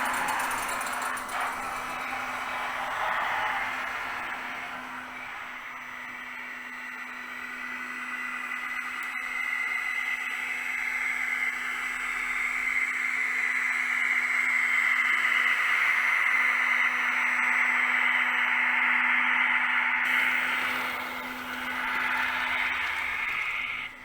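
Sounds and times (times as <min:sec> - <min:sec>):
small suction motor whirring: 0:20.1 - 0:24.0.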